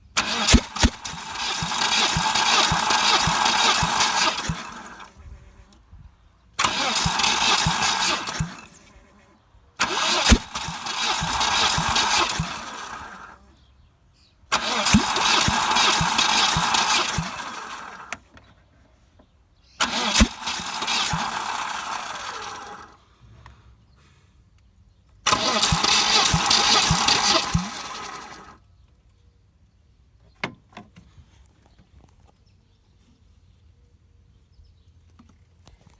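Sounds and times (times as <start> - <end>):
engine coughing: 0.0 - 5.6, 6.6 - 9.2, 9.8 - 13.5, 14.5 - 18.1, 19.8 - 23.6, 25.3 - 28.6
engine cranking on starter motor: 0.0 - 5.8, 6.5 - 9.2, 9.8 - 13.6, 14.5 - 18.4, 19.7 - 23.6, 25.2 - 28.7.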